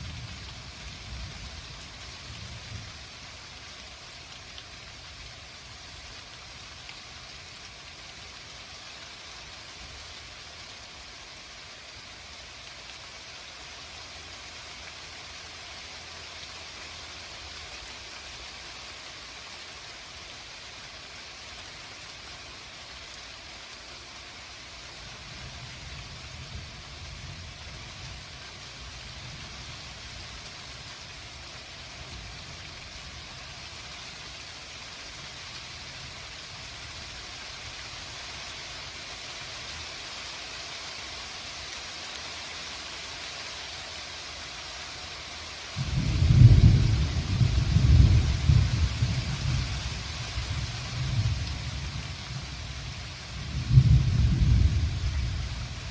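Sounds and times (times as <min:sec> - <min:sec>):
rain falling: 0:00.0 - 0:55.9
low thunder rumble: 0:45.8 - 0:55.9.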